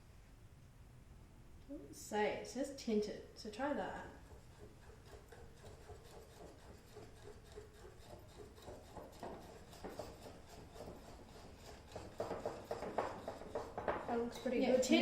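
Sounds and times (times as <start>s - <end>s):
hand whisk scraping a bowl: 3.9s - 15.0s.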